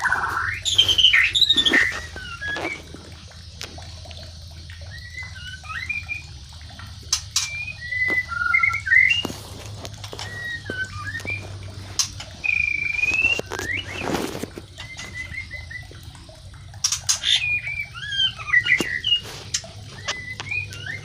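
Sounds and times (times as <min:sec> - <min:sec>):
birds singing whistled phrases: 0:00.0 - 0:02.9, 0:04.8 - 0:06.4, 0:07.1 - 0:09.3, 0:10.1 - 0:16.0, 0:16.9 - 0:21.0.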